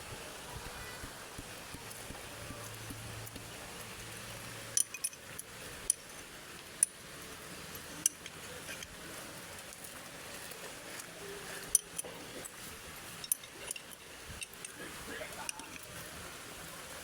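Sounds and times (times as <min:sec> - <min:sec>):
metal tools clinking: 0:04.7 - 0:06.2, 0:07.7 - 0:09.0, 0:11.5 - 0:14.8.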